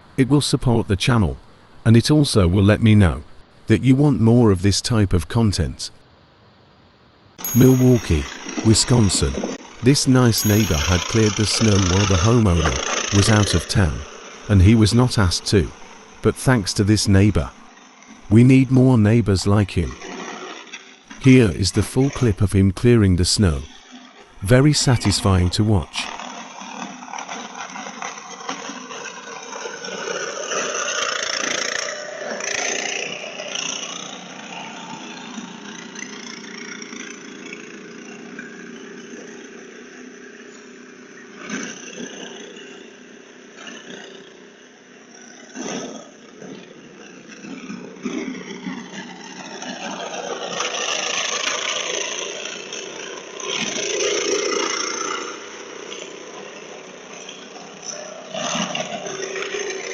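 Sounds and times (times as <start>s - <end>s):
snowblower engine running: 7.4s - 16.3s, 19.8s - 21.2s, 26.1s - 59.9s.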